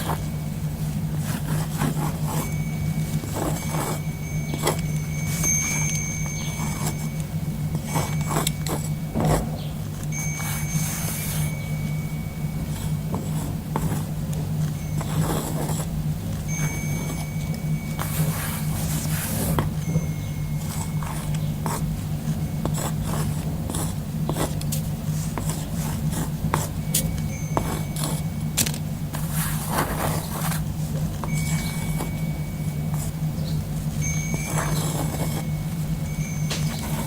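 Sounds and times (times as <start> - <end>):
pen scratching on cork: 1.2 - 2.5, 3.1 - 5.8, 6.4 - 7.1, 7.7 - 9.5, 12.7 - 14.1, 15.0 - 15.9, 20.6 - 21.9, 22.6 - 26.8, 27.6 - 28.3, 29.1 - 30.6, 34.5 - 35.5, 36.6 - 37.0.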